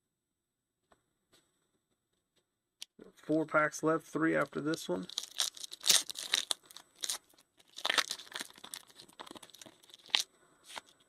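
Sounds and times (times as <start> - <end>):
card pack wrapper tearing and crinkling: 4.7 - 11.0.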